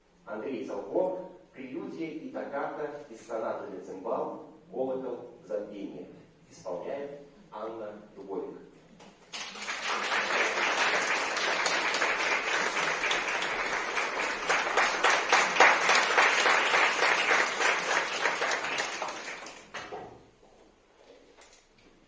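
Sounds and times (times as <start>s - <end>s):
audience applauding: 9.2s - 20.0s.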